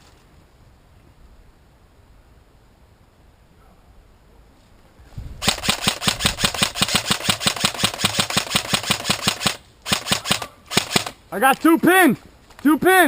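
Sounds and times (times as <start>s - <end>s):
airsoft gun automatic fire: 5.4s - 11.2s.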